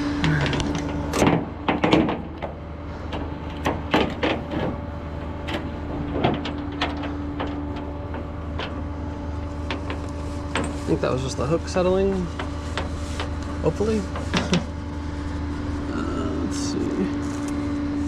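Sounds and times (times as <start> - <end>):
truck engine humming: 0.0 - 18.0
loud clunk: 0.2 - 8.8
towing gear knocking and rattling: 0.2 - 14.8.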